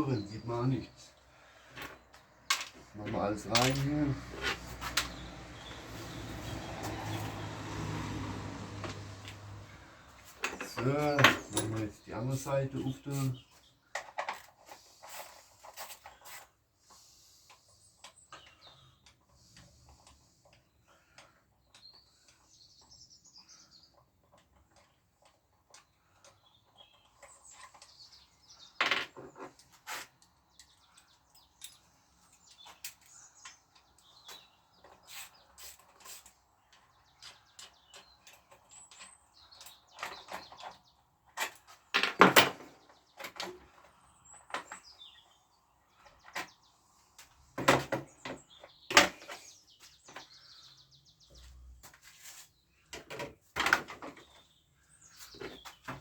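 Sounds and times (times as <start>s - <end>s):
tools and metal parts clinking: 2.5s - 5.2s, 10.2s - 12.0s, 28.8s - 43.8s.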